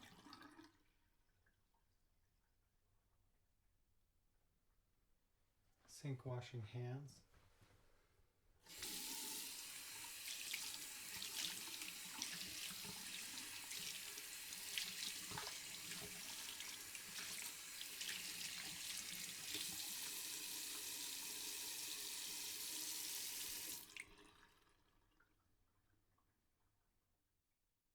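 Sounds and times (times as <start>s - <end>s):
hands washing with splashes: 8.7s - 20.8s
tap running into a sink: 8.7s - 24.3s.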